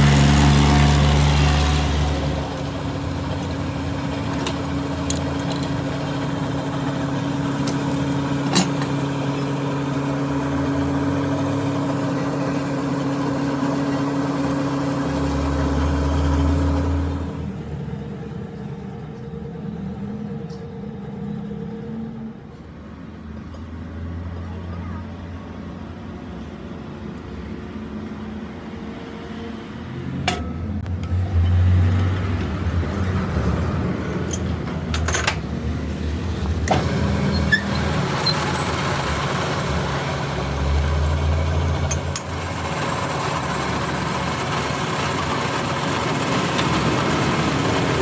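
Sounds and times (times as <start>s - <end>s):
lathe motor humming: 0.0s - 18.9s, 35.7s - 48.0s
quiet workshop background: 0.0s - 48.0s.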